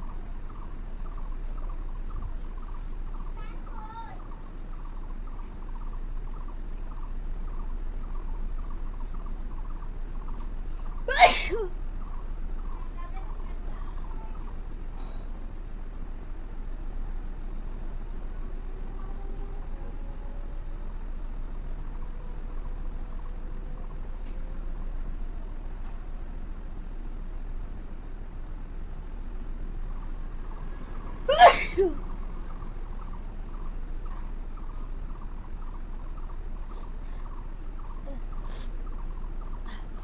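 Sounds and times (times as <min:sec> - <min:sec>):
person sneezing: 0:11.1 - 0:11.7, 0:31.3 - 0:32.0.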